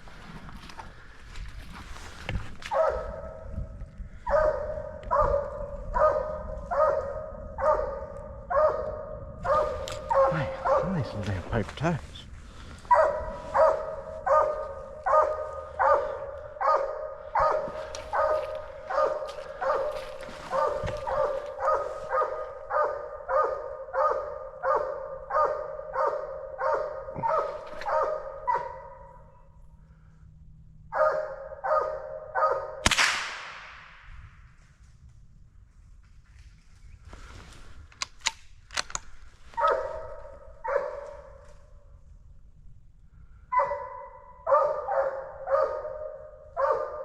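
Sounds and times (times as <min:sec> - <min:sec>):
hounds barking: 0:02.6 - 0:29.6, 0:30.9 - 0:32.8, 0:39.5 - 0:41.7, 0:43.4 - 0:47.0
rifle shot: 0:32.8 - 0:34.2.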